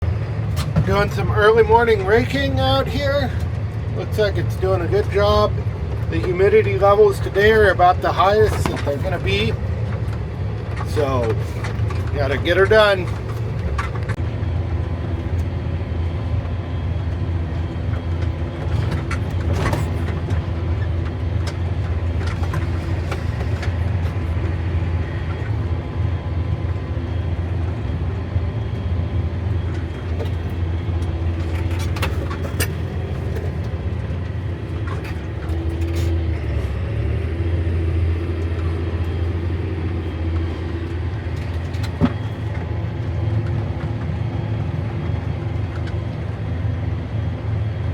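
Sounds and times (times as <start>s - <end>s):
tractor engine droning: 0.0s - 47.9s
sharp clicks and rattles: 0.6s - 14.2s, 17.5s - 25.7s, 29.6s - 36.2s.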